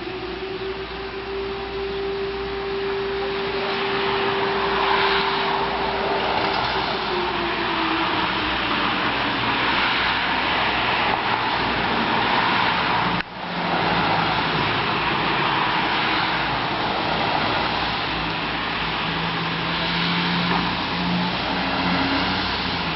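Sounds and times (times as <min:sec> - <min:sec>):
lower siren tone falling: 0:00.0 - 0:13.0
fire siren sounding: 0:00.0 - 0:22.9.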